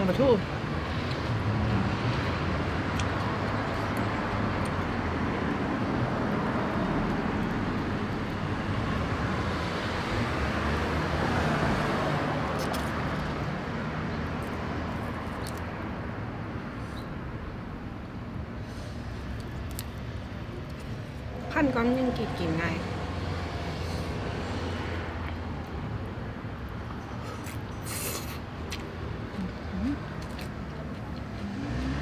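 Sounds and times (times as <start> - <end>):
vehicle passing by: 0.9 - 15.4, 20.8 - 26.0, 28.6 - 32.0.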